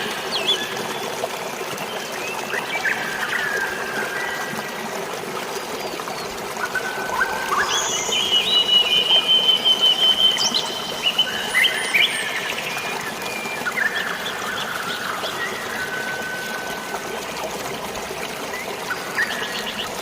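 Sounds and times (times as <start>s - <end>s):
flowing water rushing: 0.0s - 20.0s
birds whistling and chirping: 6.6s - 16.8s.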